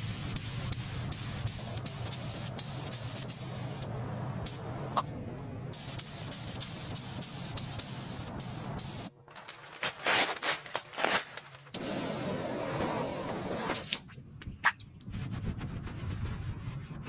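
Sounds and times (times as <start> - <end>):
spraying hiss: 0.0 - 3.9, 5.7 - 9.1
low hum: 0.0 - 9.5.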